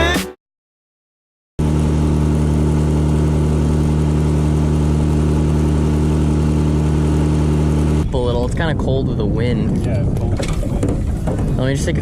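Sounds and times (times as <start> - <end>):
boat motor running: 1.6 - 8.0, 10.0 - 12.0.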